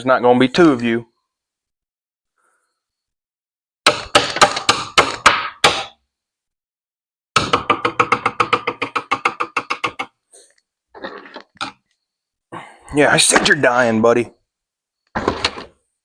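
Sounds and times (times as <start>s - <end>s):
sharp hard knocks: 3.8s - 6.0s, 7.4s - 10.1s.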